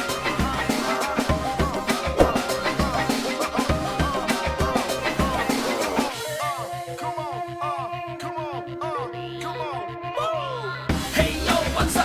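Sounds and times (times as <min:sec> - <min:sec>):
background music with drum beat: 0:00.0 - 0:06.3, 0:10.9 - 0:12.0.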